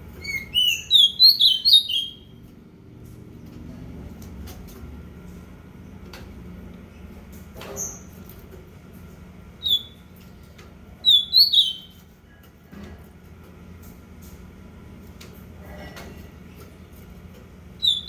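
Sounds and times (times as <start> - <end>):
bird calls: 0.2 - 2.3, 11.0 - 12.0, 17.8 - 18.0.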